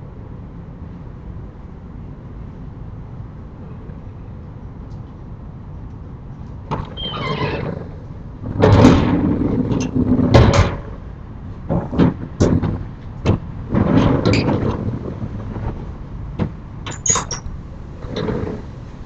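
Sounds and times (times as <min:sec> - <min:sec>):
shutters scraping along tracks: 0:06.3 - 0:19.0
rattling rumbling shutter slide: 0:06.6 - 0:19.0
shutter squeak: 0:06.7 - 0:07.9, 0:16.9 - 0:17.5.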